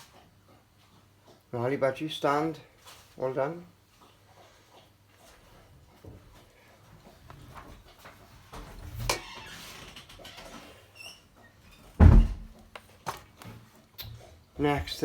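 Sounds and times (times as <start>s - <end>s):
heavy thump: 12.0s - 12.5s.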